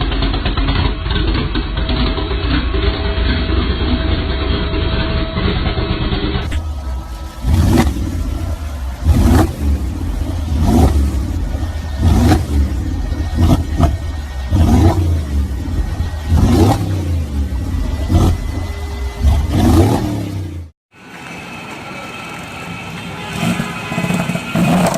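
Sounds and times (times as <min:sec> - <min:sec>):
loud engine revving: 0:00.0 - 0:20.8, 0:23.0 - 0:24.9.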